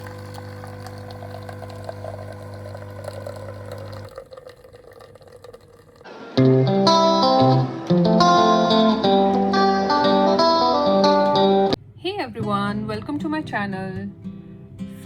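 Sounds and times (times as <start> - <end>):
coffee machine pump humming: 0.0 - 5.8.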